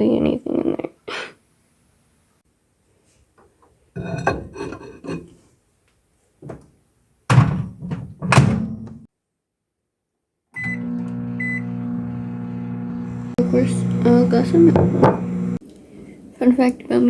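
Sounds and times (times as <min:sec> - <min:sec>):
microwave oven humming: 0:10.6 - 0:15.6.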